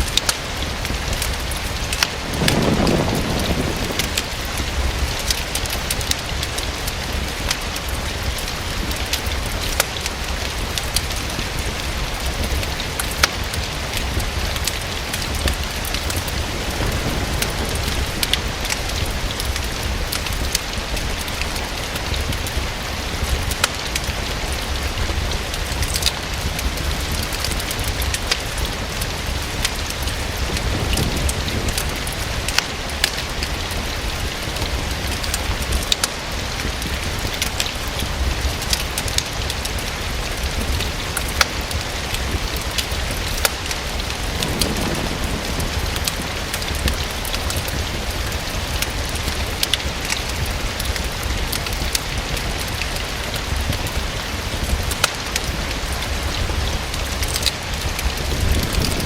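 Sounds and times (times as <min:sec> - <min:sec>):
rain falling against a window: 0:00.0 - 0:59.0
low rumble: 0:42.3 - 0:49.2.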